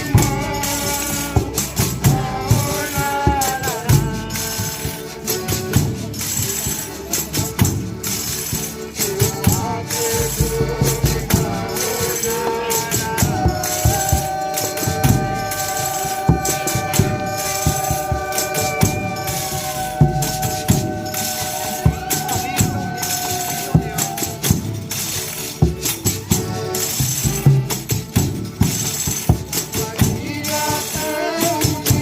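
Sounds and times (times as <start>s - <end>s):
drum strokes: 0.0s - 32.0s
tambourines jingling: 0.0s - 32.0s
long held notes: 9.3s - 25.2s.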